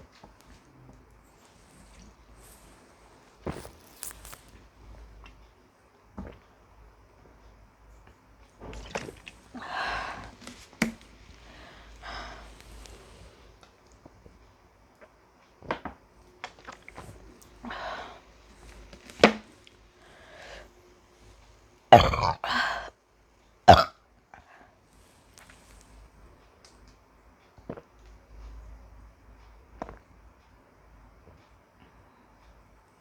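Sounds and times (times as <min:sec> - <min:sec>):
soft breaths: 0:00.0 - 0:05.2, 0:08.6 - 0:13.9, 0:16.8 - 0:21.6, 0:24.4 - 0:26.5
person drinking and swallowing: 0:22.0 - 0:22.9, 0:23.7 - 0:23.9.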